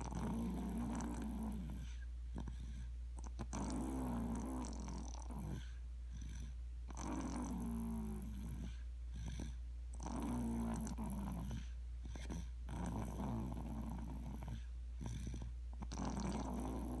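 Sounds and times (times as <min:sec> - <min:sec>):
steady low hum: 0:00.0 - 0:17.0
person snoring: 0:12.2 - 0:17.0.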